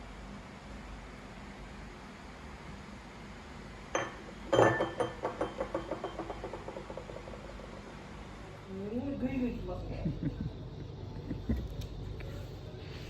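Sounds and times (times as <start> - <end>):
tableware clinking: 4.0 - 7.7
dish knocking down: 4.0 - 8.0
dish rattling as it rocks: 4.0 - 8.3.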